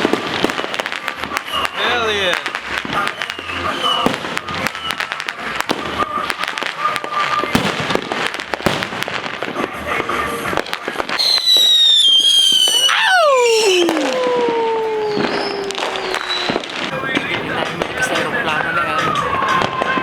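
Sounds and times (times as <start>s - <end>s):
fireworks pops and bangs: 0.0s - 20.0s
firework whistles falling in pitch: 3.0s - 5.2s, 11.2s - 20.0s.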